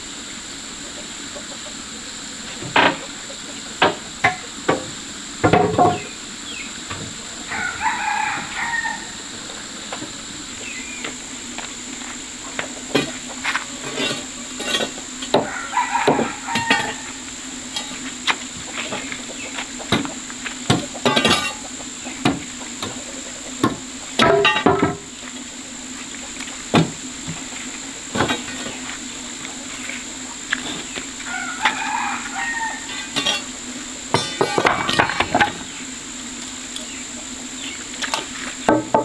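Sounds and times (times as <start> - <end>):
rooster crowing: 7.3 - 9.8, 15.3 - 17.6, 31.2 - 33.5.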